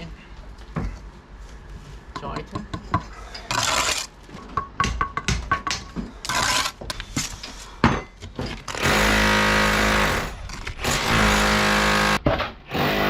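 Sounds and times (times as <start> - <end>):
handheld power tool running: 8.7 - 12.2.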